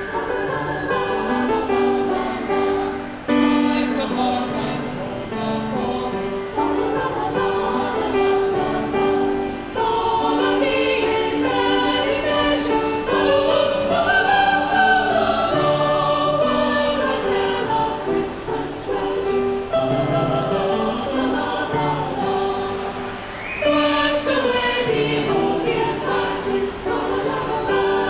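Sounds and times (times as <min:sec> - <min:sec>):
choir singing sustained chords: 0:00.0 - 0:28.0.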